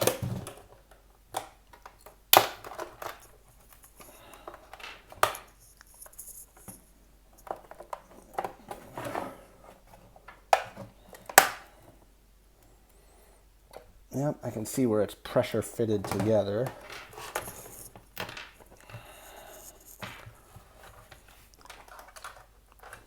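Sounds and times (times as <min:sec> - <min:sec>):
plastic snaps and clicks: 0:00.0 - 0:05.9, 0:10.3 - 0:11.7
plastic scraping and crackling: 0:00.0 - 0:11.8, 0:15.7 - 0:23.0.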